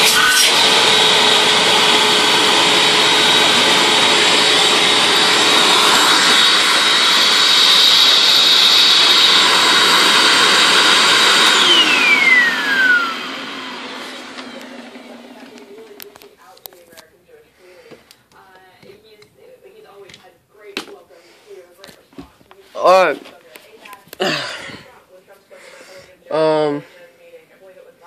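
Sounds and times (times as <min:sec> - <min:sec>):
vacuum motor winding down: 0:00.0 - 0:16.2
upright vacuum running with whine: 0:00.0 - 0:16.3.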